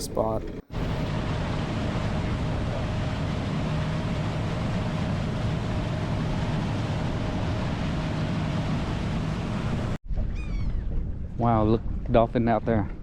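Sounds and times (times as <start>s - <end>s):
outboard engine running: 0.0s - 10.0s
rush of wind and water: 0.7s - 13.0s.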